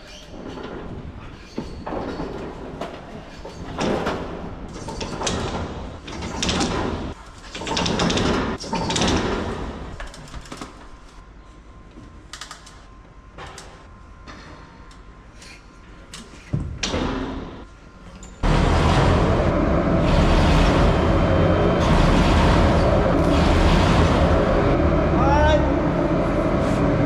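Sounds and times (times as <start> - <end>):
loud steady machine noise: 18.4 - 27.0.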